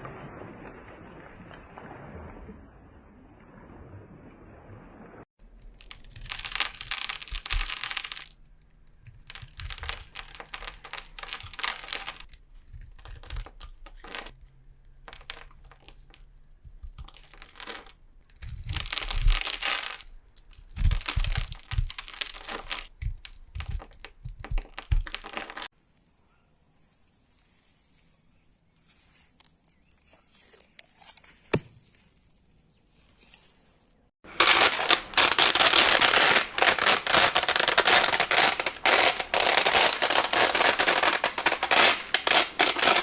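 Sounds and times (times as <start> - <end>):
crunching and crinkling: 5.4 - 25.7, 34.2 - 43.0.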